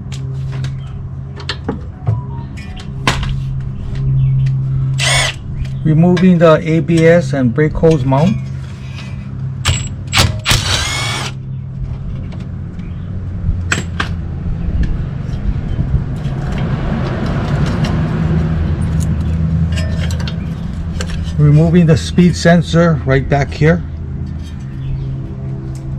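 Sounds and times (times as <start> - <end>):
steady low hum: 0.0 - 25.9
power tool whirring: 5.0 - 5.4, 10.1 - 11.4.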